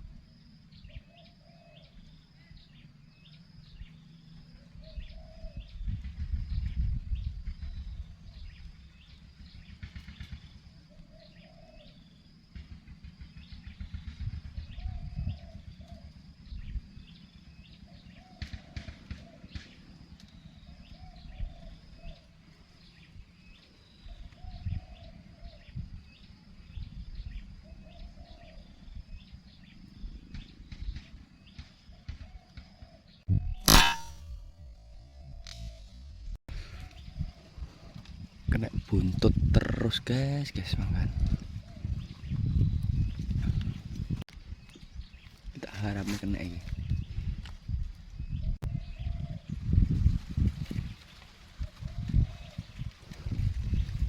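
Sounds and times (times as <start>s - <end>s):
short low bird calls: 0.7s - 6.0s
gusty wind buffeting microphone: 4.8s - 11.4s, 12.0s - 32.4s, 33.1s - 54.0s.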